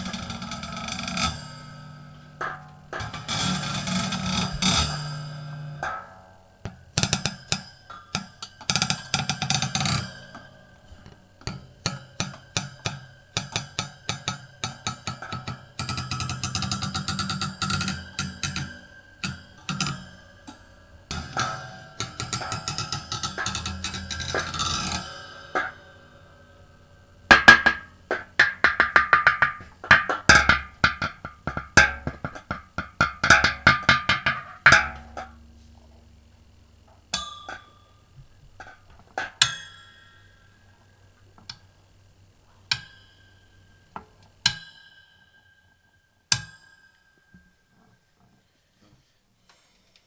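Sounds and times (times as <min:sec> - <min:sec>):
objects knocked with ringing tone: 0:27.3 - 0:35.3.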